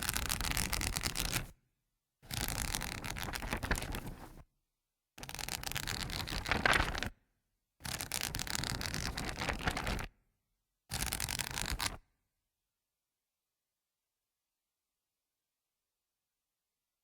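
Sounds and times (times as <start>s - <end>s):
book pages flipping rapidly: 0.0s - 1.5s, 2.3s - 4.4s, 5.2s - 7.1s, 7.9s - 10.1s, 10.9s - 12.0s.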